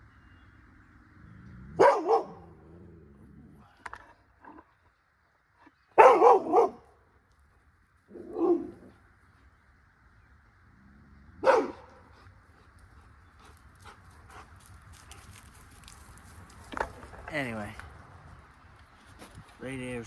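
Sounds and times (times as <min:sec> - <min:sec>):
dog barking: 0:01.8 - 0:02.5, 0:06.0 - 0:06.9, 0:08.2 - 0:08.8, 0:11.4 - 0:12.0.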